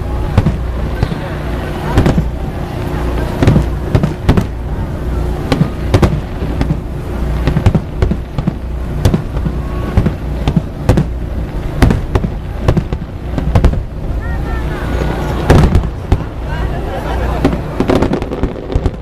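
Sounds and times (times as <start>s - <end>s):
low rumble: 0.0s - 19.0s
firework shells bursting: 5.4s - 14.0s.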